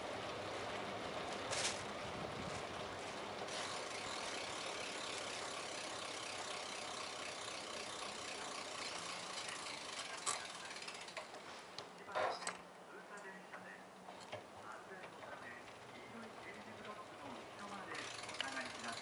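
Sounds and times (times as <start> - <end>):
bicycle tyre and wind noise: 0.0 - 11.6, 17.2 - 19.0.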